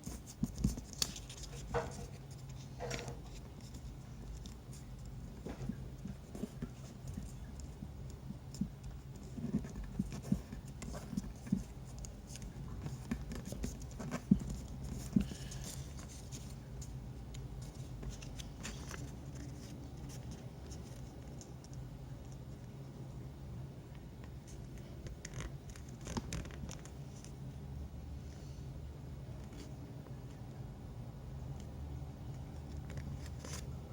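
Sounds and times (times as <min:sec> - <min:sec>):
paper being folded and creased: 0:00.0 - 0:07.6, 0:17.6 - 0:21.1, 0:32.8 - 0:33.7.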